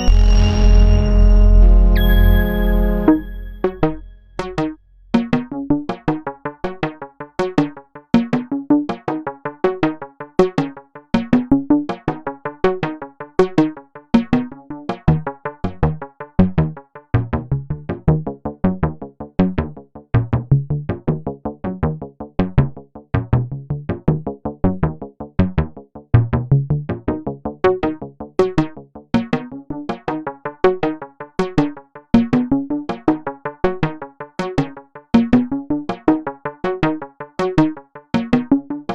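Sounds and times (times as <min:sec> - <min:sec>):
bass line: 0:00.0 - 0:05.5
synthesizer music: 0:00.0 - 0:07.8.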